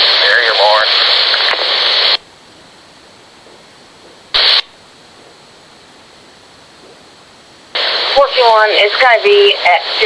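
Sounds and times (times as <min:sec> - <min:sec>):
burst of radio static: 0:00.0 - 0:02.2, 0:04.3 - 0:04.8, 0:07.8 - 0:10.0
faint steady radio hiss: 0:00.0 - 0:10.0.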